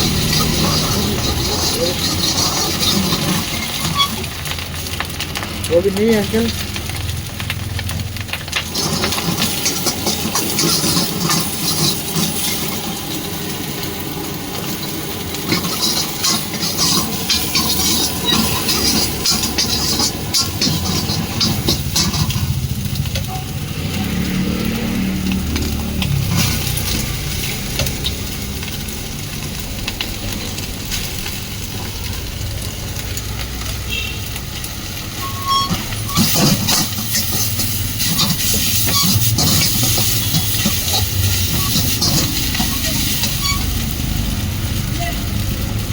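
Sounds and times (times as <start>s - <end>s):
gas burner hum: 0.0s - 45.9s
rice sizzling in a wok: 0.0s - 45.9s.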